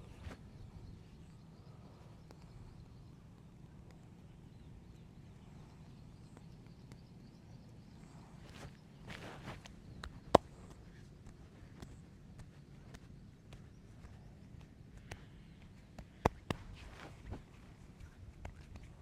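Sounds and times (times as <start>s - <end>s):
steady low hum: 0.0s - 19.0s
light taps on head: 16.0s - 17.4s.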